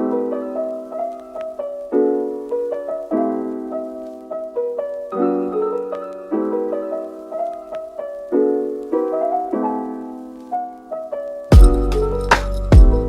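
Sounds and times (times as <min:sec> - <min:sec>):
piano chords: 0:00.0 - 0:13.0
loud hit with deep bass: 0:11.6 - 0:12.0.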